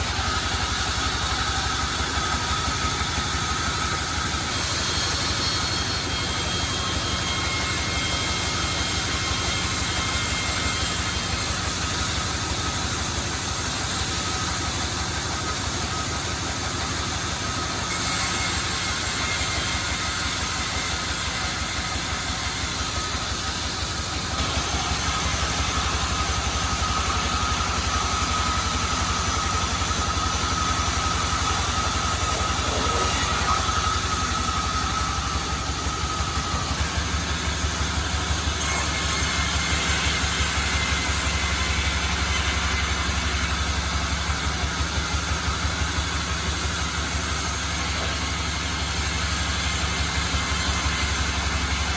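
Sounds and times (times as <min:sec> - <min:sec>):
sawmill machinery droning: 0:00.0 - 0:51.9.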